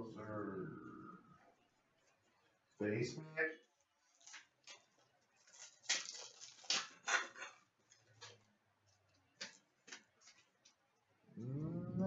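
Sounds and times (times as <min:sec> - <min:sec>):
card wrapper rustling: 0:03.8 - 0:10.8.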